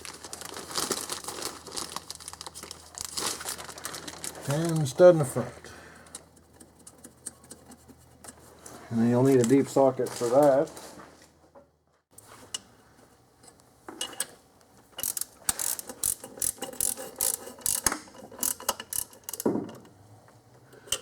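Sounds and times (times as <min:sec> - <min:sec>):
hand ratchet clicking: 0:15.0 - 0:19.5.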